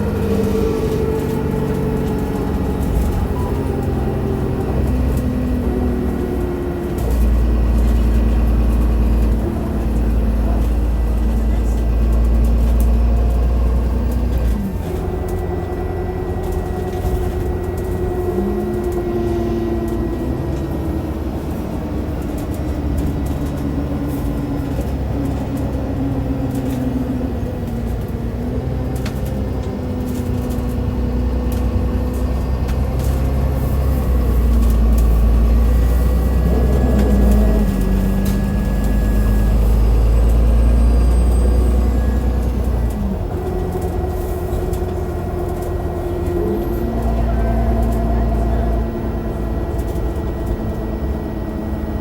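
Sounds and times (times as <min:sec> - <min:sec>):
bus diesel engine rumble: 0:00.0 - 0:52.0
axle whine: 0:33.0 - 0:45.0.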